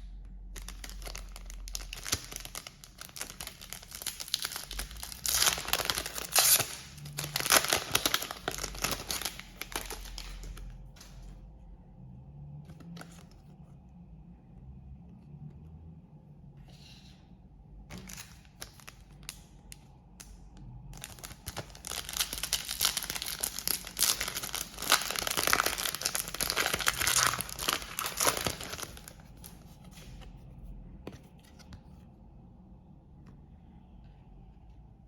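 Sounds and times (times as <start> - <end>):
wrapper crinkling: 0.5 - 11.1, 21.0 - 29.7
wrapper ripping: 0.6 - 10.6, 21.0 - 29.5.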